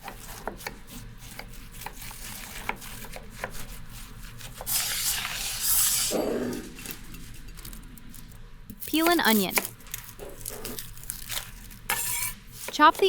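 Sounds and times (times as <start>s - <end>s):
knife chopping on cutting board: 0.0s - 5.0s, 8.7s - 13.0s.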